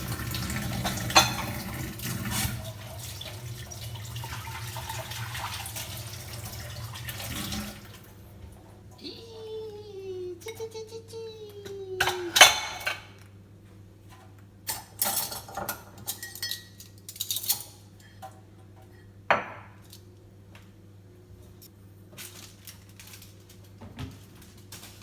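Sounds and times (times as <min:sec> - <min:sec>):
dishes and cutlery clinking: 0:00.7 - 0:01.7, 0:12.0 - 0:13.1, 0:14.7 - 0:18.4.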